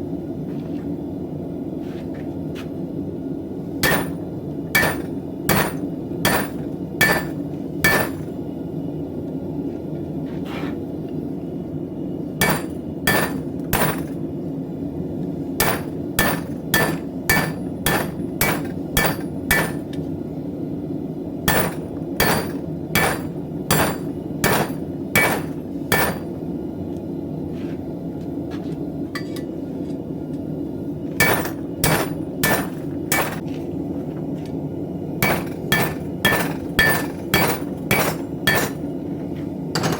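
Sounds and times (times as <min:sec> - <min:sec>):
hammer striking steel on anvil: 0:03.8 - 0:08.3, 0:12.4 - 0:14.2, 0:15.6 - 0:20.0, 0:21.5 - 0:26.4, 0:31.2 - 0:33.4, 0:35.2 - 0:38.9.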